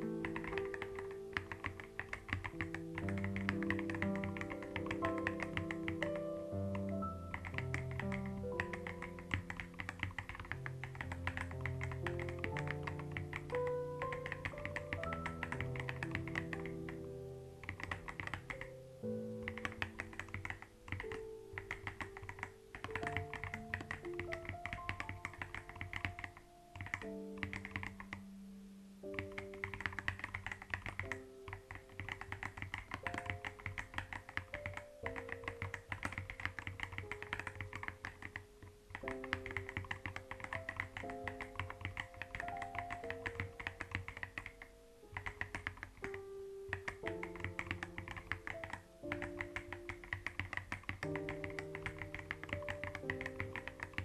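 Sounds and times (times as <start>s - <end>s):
keyboard typing clicks: 0.0s - 28.2s, 29.1s - 54.0s
soft background music: 0.0s - 54.0s.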